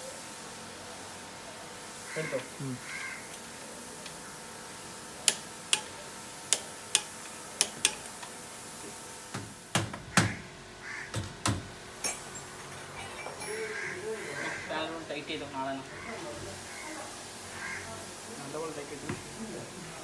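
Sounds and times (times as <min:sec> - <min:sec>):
tool sharp clicks: 0:05.2 - 0:05.9, 0:06.5 - 0:08.3.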